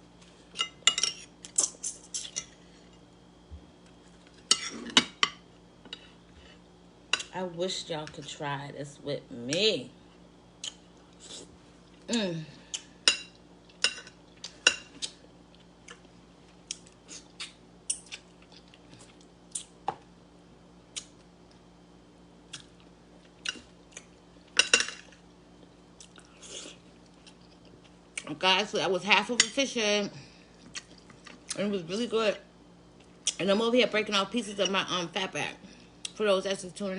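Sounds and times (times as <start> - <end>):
person humming: 12.1 - 12.7
wet chewing and lip smacks: 30.6 - 31.6.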